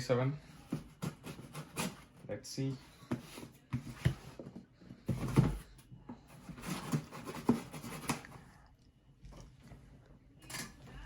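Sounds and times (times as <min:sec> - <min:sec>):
hands handling cardboard box: 0:02.8 - 0:08.3.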